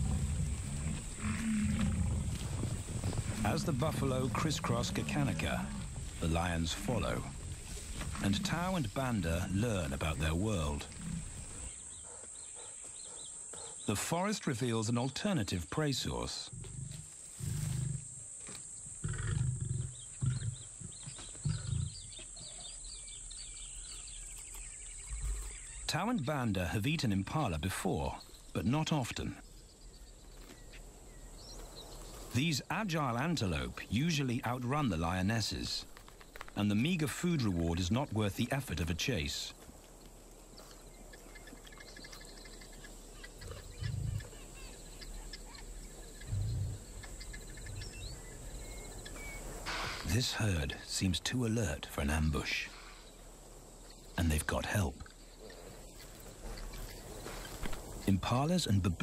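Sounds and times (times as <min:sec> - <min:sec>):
deep rumbling animal grunts: 0:00.0 - 0:06.2, 0:19.0 - 0:22.8, 0:46.2 - 0:47.0
small birds chirping: 0:00.0 - 0:59.0.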